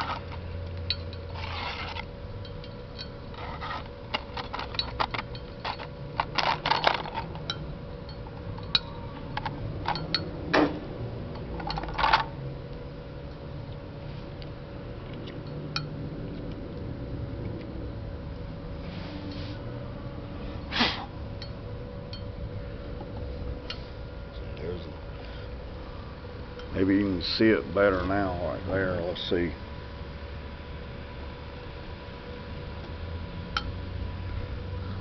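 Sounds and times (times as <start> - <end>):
low hum: 0.0 - 35.0
metallic clinks and taps: 6.7 - 8.9.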